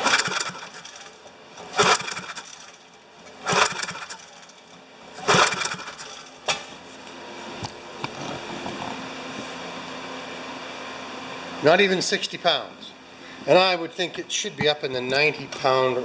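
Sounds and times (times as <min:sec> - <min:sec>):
starter rope pulls cranking engine: 0:00.0 - 0:02.8, 0:03.4 - 0:04.6, 0:05.2 - 0:06.3.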